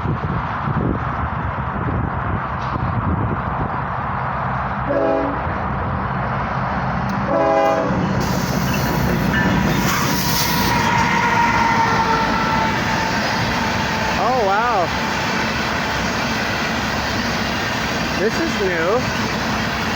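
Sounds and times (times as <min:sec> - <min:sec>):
train rumbling: 0:00.0 - 0:19.9
locomotive air horn blasts: 0:04.9 - 0:05.5, 0:07.3 - 0:08.1, 0:09.9 - 0:15.3.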